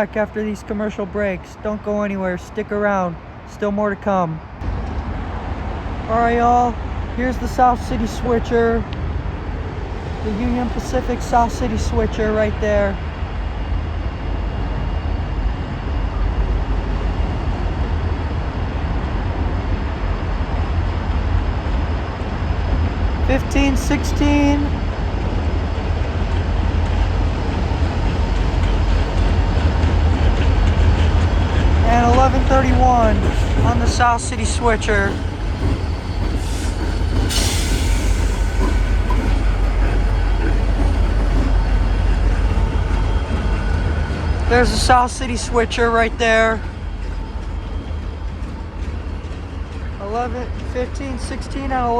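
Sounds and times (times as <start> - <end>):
diesel locomotive rumbling past: 4.4 - 51.9.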